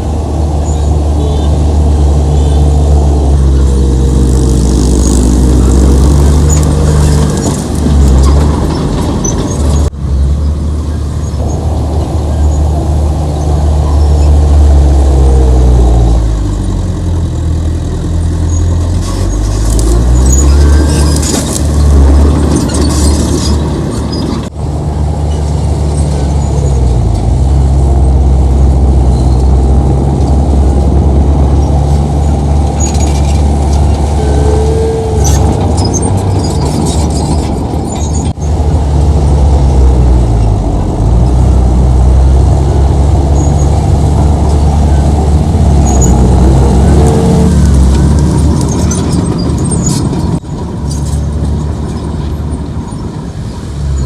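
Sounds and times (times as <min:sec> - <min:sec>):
heavy diesel machinery engine: 0:00.0 - 0:54.0
high metallic squeals: 0:18.4 - 0:24.4, 0:31.5 - 0:38.6, 0:43.3 - 0:51.3.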